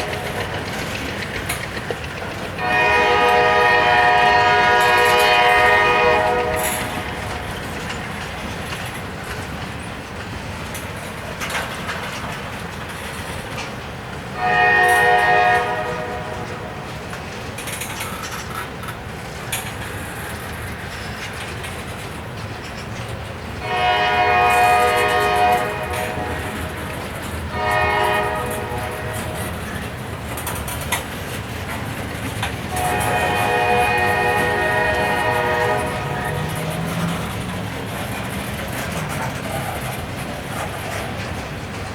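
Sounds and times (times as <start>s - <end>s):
freight train rumbling: 0.0s - 41.9s
train wheel clatter: 0.0s - 41.9s
locomotive air horn blasts: 2.6s - 7.4s, 14.4s - 16.9s, 23.6s - 29.9s, 32.7s - 37.3s.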